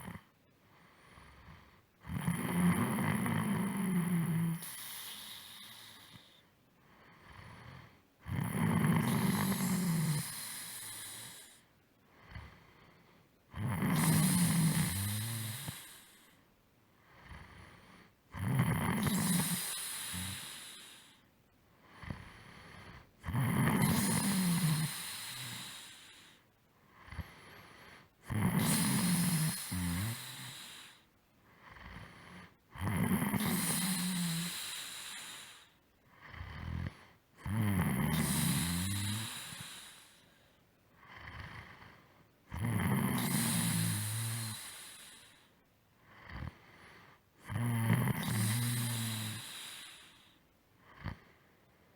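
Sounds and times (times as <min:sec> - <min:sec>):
soft breathing: 0:00.0 - 0:02.0, 0:04.5 - 0:08.2, 0:09.1 - 0:13.5, 0:14.1 - 0:18.3, 0:24.0 - 0:28.2, 0:33.4 - 0:37.4, 0:38.2 - 0:42.4, 0:43.1 - 0:47.4, 0:48.2 - 0:51.9
person snoring: 0:01.0 - 0:06.4, 0:07.1 - 0:16.4, 0:17.1 - 0:21.2, 0:21.9 - 0:26.4, 0:27.0 - 0:31.0, 0:31.6 - 0:40.2, 0:41.0 - 0:45.5, 0:46.1 - 0:51.4.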